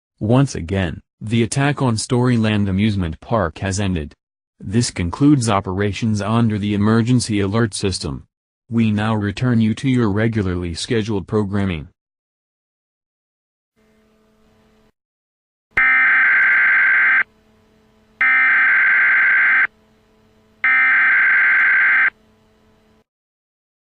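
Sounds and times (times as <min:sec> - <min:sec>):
faint steady hum: 0:16.2 - 0:23.0
buzzy digital data bursts: 0:18.2 - 0:19.7.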